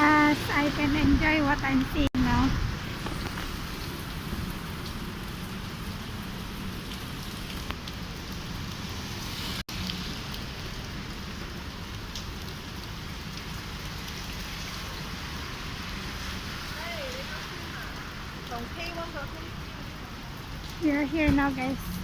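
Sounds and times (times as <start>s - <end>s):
heavy rain falling: 0.0s - 22.0s.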